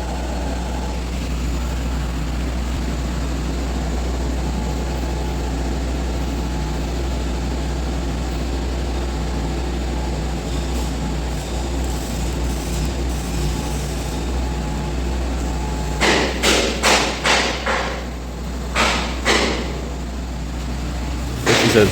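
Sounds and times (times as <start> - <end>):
constant low hum: 0.0 - 21.9
welding arc hiss: 4.5 - 21.9.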